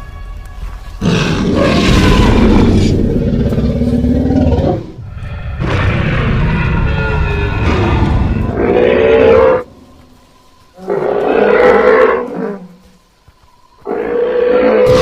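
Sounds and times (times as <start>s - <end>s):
deep rumble: 0.0s - 8.7s
dinosaur roars: 1.0s - 9.6s.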